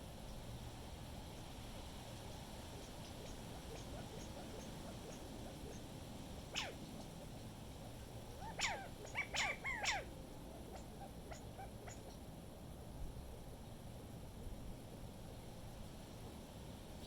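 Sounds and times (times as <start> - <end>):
low rumble of wind: 0.0 - 17.0.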